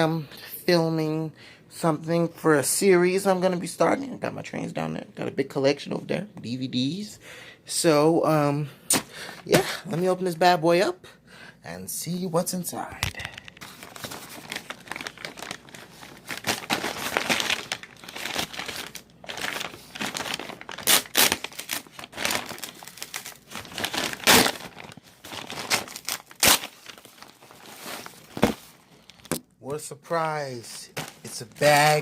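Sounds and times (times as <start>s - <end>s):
packaging crinkling and tearing: 12.8s - 29.4s.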